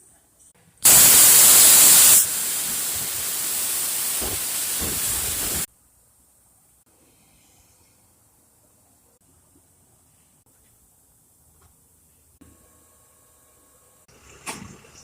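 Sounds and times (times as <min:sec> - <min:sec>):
metal-cutting torch hissing: 0:00.8 - 0:05.7.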